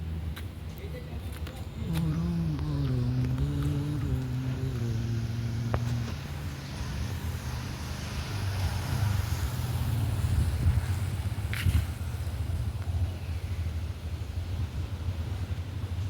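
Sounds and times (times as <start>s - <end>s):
vehicle engine rumbling: 0.0s - 16.0s.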